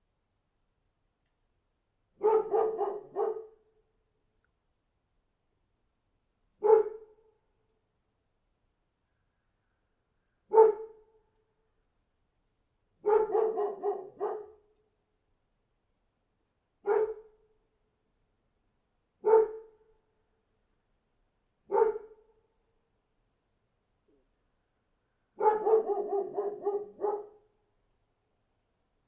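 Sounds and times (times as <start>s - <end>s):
dog barking: 2.2s - 3.6s, 6.6s - 7.1s, 10.5s - 11.0s, 13.0s - 14.6s, 16.8s - 17.4s, 19.2s - 19.8s, 21.7s - 22.2s, 25.4s - 27.5s.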